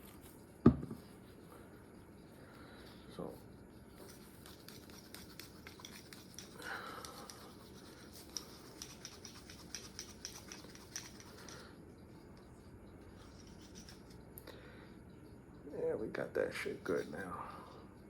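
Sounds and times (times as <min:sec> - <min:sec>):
scratchy rubbing and small clicks: 0:03.8 - 0:11.6.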